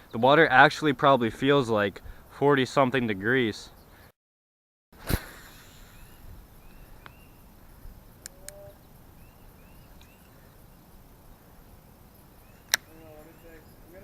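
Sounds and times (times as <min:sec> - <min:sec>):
short high chirping calls: 0:05.0 - 0:10.8
light clicks: 0:12.6 - 0:13.0.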